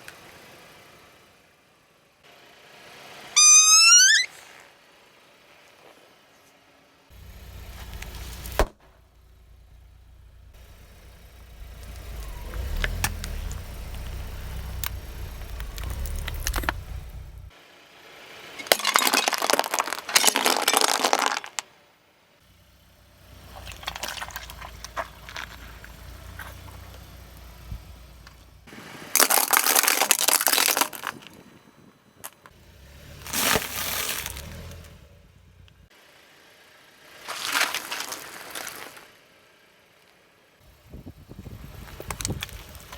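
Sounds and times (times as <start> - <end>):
low engine rumble: 7.1 - 18.4, 22.2 - 29.2, 30.7 - 37.1, 37.8 - 42.9
containers crushing crunch: 18.6 - 21.6, 23.5 - 27.0, 29.1 - 31.4, 33.2 - 34.8, 37.2 - 39.1.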